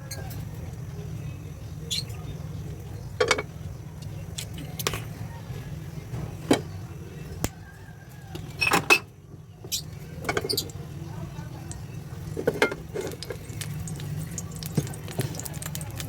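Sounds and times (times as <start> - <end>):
dishes knocking and clinking: 3.2 - 3.5, 8.6 - 9.1, 12.4 - 13.4.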